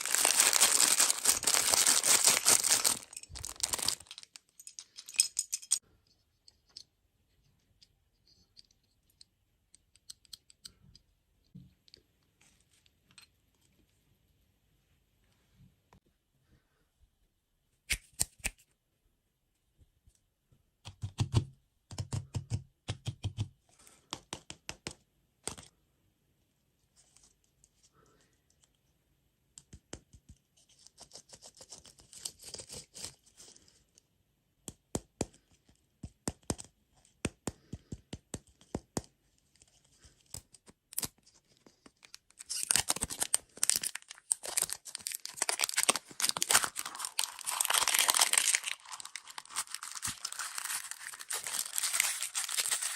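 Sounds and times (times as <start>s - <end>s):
plastic wrapper crinkling and tearing: 0.0s - 4.7s, 40.6s - 52.9s.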